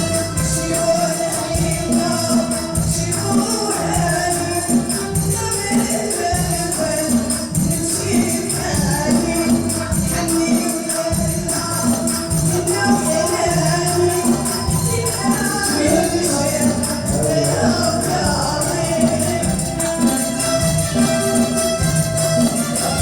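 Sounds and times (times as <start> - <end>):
group singing: 0.0 - 23.0
hand drums beating: 0.0 - 23.0
tambourines jingling: 0.0 - 23.0.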